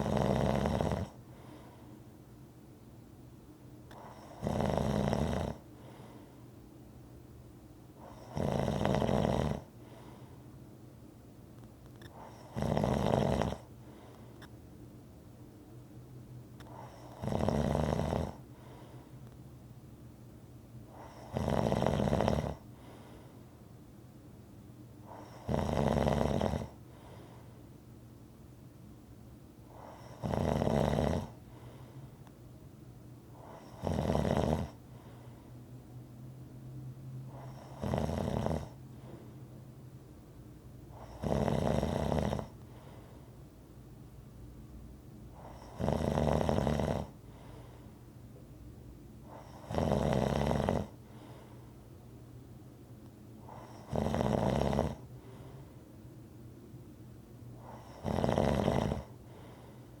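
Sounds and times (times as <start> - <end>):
loud snoring: 0.0 - 1.2, 3.9 - 5.6, 8.0 - 9.7, 12.2 - 13.7, 16.8 - 18.4, 21.0 - 22.6, 25.1 - 26.8, 29.8 - 31.4, 33.4 - 34.8, 37.3 - 38.8, 41.0 - 42.6, 45.4 - 47.2, 49.3 - 51.0, 53.5 - 55.1, 57.6 - 59.5
faint breathing: 1.0 - 2.2, 5.6 - 6.6, 9.6 - 10.6, 13.6 - 14.6, 16.6 - 17.2, 18.3 - 19.4, 22.6 - 23.6, 26.7 - 27.8, 29.6 - 30.2, 31.2 - 32.3, 34.6 - 36.1, 38.7 - 39.6, 42.4 - 43.6, 47.0 - 48.2, 50.9 - 52.0, 55.0 - 56.2, 57.5 - 58.1, 58.9 - 60.0.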